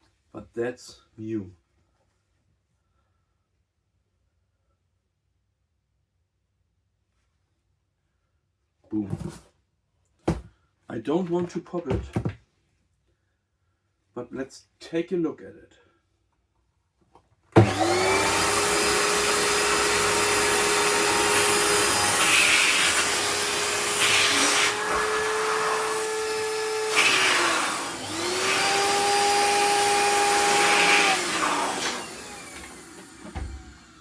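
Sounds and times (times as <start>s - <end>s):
electric balloon inflator running: 17.6s - 34.0s.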